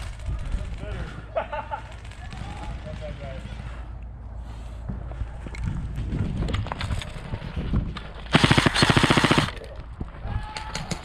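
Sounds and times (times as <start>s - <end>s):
airsoft gun full-auto burst: 8.3s - 9.6s.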